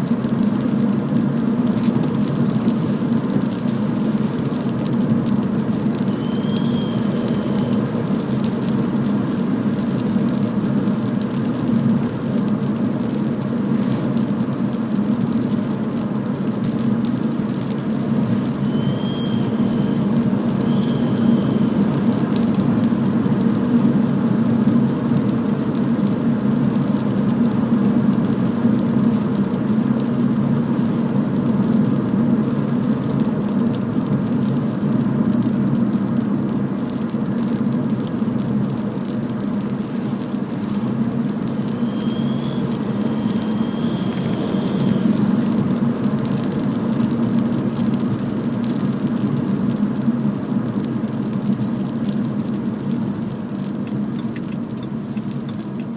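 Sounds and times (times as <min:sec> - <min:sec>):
diesel engine and road noise: 0:00.0 - 0:55.9
faint high-pitched whistle: 0:06.1 - 0:07.6, 0:18.6 - 0:20.0, 0:20.6 - 0:21.7, 0:41.7 - 0:45.2.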